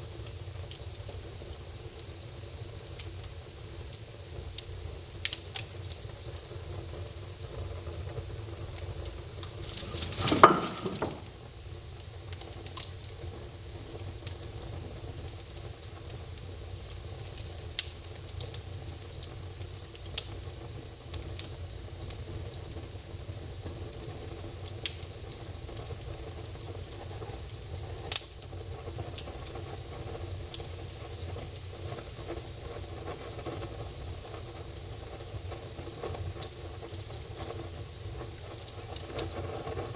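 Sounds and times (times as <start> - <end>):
fire hissing: 0.0 - 39.9
wood fire crackling: 0.0 - 39.9
loud rush of fire: 4.0 - 12.4.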